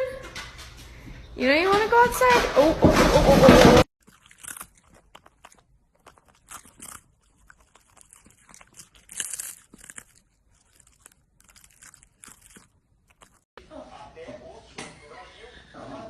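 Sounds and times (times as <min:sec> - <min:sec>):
dog crunching: 0:03.1 - 0:13.5.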